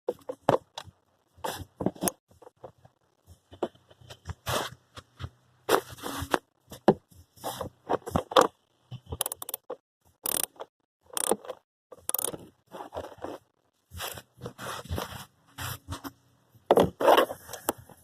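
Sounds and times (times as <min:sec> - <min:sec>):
plastic trim scraping and clicking: 0:08.2 - 0:12.4.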